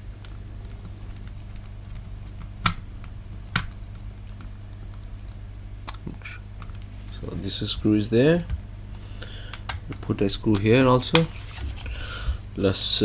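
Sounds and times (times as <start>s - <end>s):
low electrical hum: 0.0s - 13.0s
sharp clicks of plastic parts: 0.2s - 5.1s, 5.8s - 6.9s, 8.4s - 11.4s.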